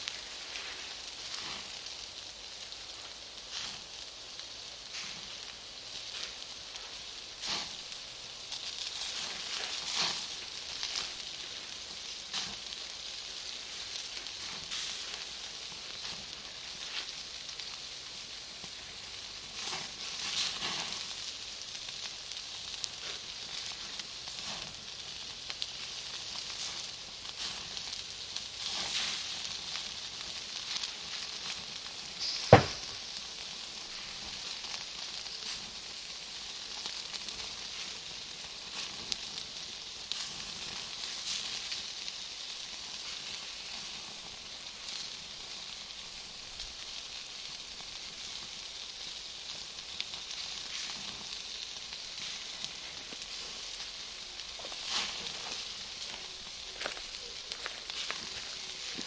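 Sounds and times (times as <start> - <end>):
fire hissing and crackling: 0.0 - 59.0
charcoal bursting with loud pop: 6.0 - 7.9, 12.2 - 17.9, 30.6 - 35.6, 50.0 - 59.0.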